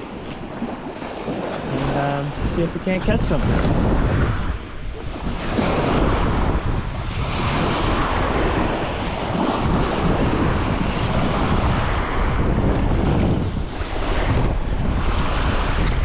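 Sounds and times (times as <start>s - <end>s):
lake waves washing against shore: 0.0s - 16.0s
wind buffeting microphone: 0.0s - 16.0s.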